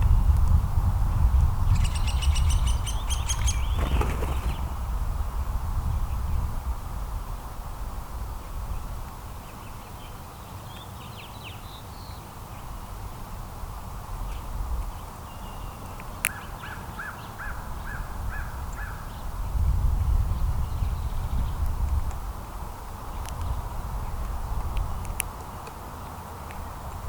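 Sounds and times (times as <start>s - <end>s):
low outdoor rumble: 0.0s - 9.8s.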